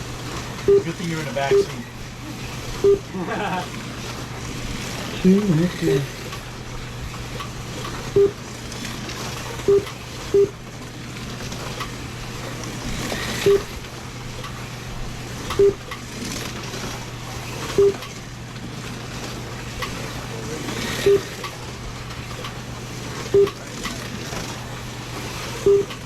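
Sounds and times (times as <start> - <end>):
short electronic beeps: 0.6 - 1.8, 2.8 - 3.1, 8.2 - 8.4, 9.7 - 10.6, 13.4 - 13.7, 15.6 - 15.8, 17.8 - 18.0, 21.0 - 21.3, 23.3 - 23.6, 25.6 - 26.0.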